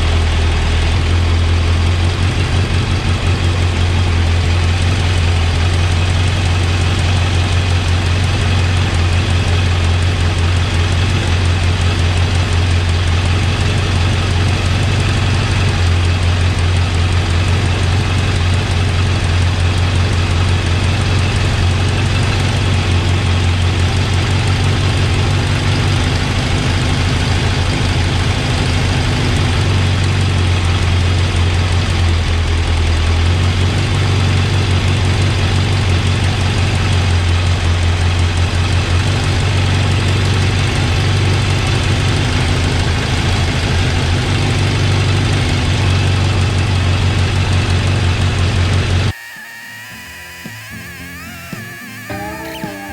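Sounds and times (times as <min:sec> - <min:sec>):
motorcycle engine idling: 0:00.0 - 0:49.2.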